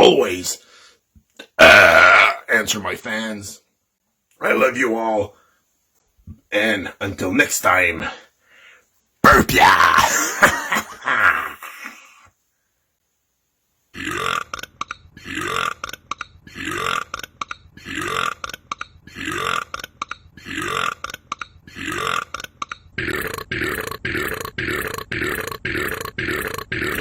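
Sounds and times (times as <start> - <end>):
short burps: 1.4 - 2.4, 14.0 - 27.0.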